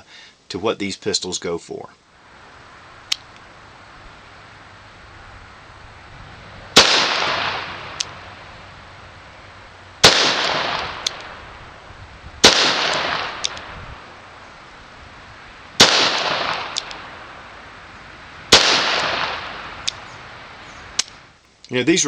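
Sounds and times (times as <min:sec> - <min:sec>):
revolver gunshots echoing: 0:06.7 - 0:08.3, 0:10.0 - 0:11.4, 0:12.4 - 0:13.8, 0:15.8 - 0:17.2, 0:18.5 - 0:19.8.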